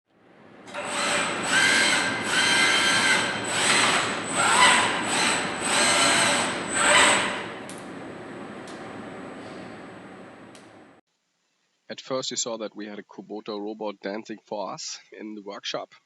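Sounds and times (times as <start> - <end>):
robot arm servo whining: 0.7 - 8.8.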